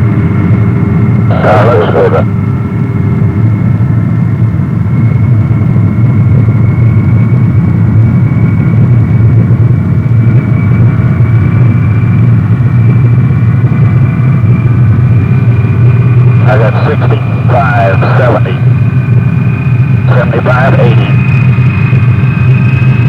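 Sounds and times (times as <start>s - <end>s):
jet engines at takeoff power: 0.0s - 23.0s.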